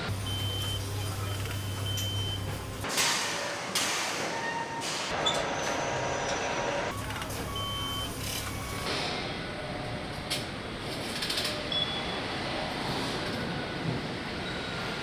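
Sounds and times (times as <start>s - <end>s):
factory machinery noise: 0.0s - 15.0s
short electronic beeps: 0.2s - 2.5s, 7.4s - 8.9s.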